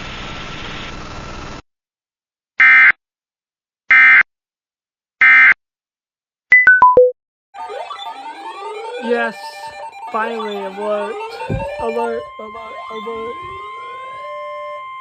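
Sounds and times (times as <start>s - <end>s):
noisy warning audio: 7.6s - 15.0s.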